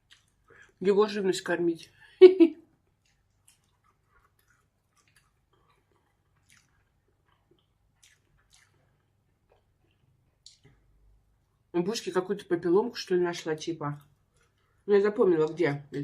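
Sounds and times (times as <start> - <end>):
soft chewing clicks: 0.0 - 0.8, 2.7 - 11.6, 13.9 - 14.9.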